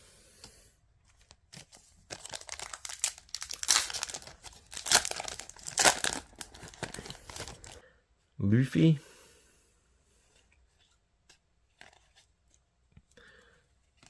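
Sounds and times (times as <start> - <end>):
wrapper crinkling and tearing: 1.6 - 7.8.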